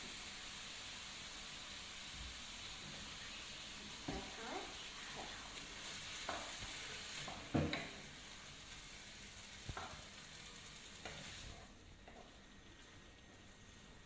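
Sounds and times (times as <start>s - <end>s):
meat sizzling in a frying pan: 0.0s - 14.0s.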